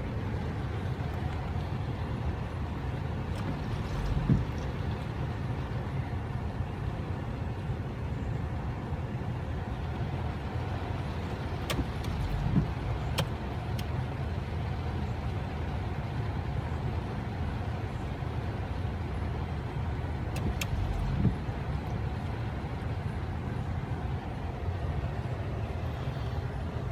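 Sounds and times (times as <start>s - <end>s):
car road and engine rumble: 0.0s - 26.9s
sharp clicks: 11.6s - 13.9s, 20.3s - 21.4s.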